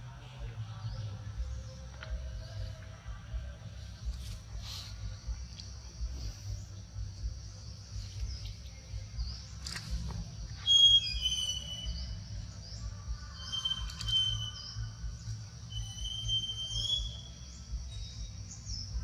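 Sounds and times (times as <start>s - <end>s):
steady low rumble: 0.0s - 19.0s
animal squealing call: 10.6s - 12.1s.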